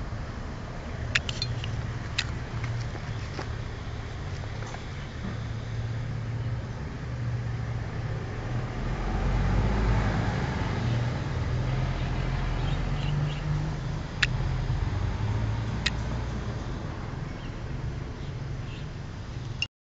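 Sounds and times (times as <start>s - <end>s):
road traffic rumble: 0.0s - 19.7s
sharp clicks: 1.2s - 3.0s.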